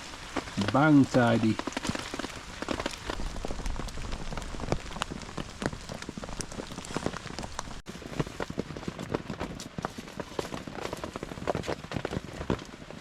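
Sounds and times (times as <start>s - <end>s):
heavy rain falling: 0.0s - 7.8s
large raindrops tapping: 0.0s - 12.7s.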